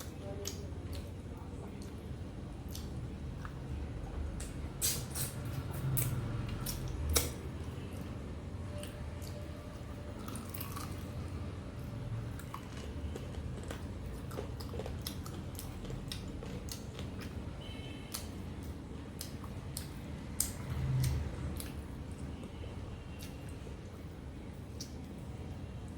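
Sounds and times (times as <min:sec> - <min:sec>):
chewing and mouth clicks: 0:00.0 - 0:08.1, 0:10.1 - 0:11.2, 0:12.3 - 0:22.4, 0:23.1 - 0:24.0, 0:24.7 - 0:25.2.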